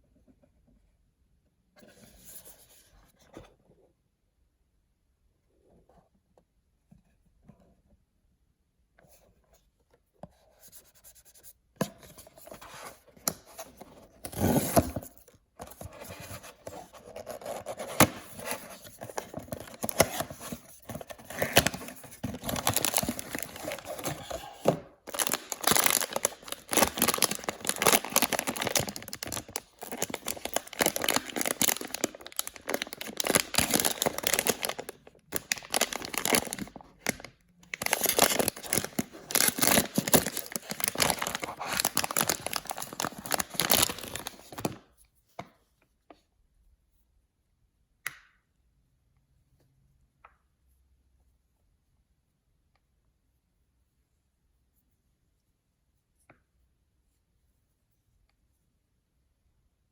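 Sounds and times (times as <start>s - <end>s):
packaging being torn and crinkled: 17.2s - 24.4s, 25.0s - 44.8s.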